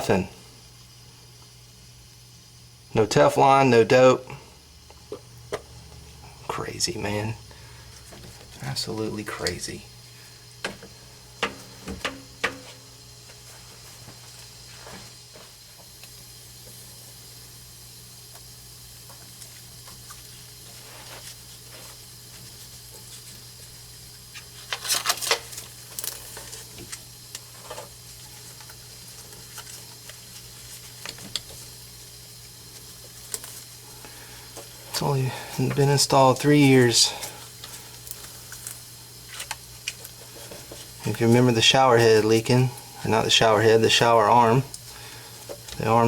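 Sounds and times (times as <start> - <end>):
faint hiss: 0.0 - 46.0
steady low hum: 0.0 - 46.0
clicks of plumbing fittings: 10.6 - 12.8.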